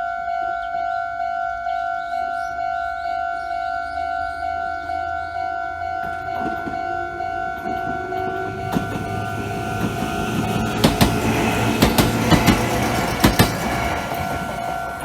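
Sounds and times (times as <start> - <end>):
level crossing alarm bell dinging: 0.0 - 15.0
train passing: 0.2 - 15.0
train wheels clacking over rail joints: 5.8 - 15.0.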